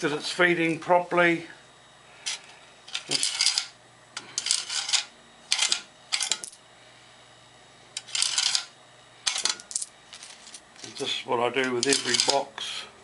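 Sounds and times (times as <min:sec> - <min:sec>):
coins clattering through coin slide: 0:02.3 - 0:03.8, 0:04.4 - 0:06.6, 0:08.0 - 0:12.5.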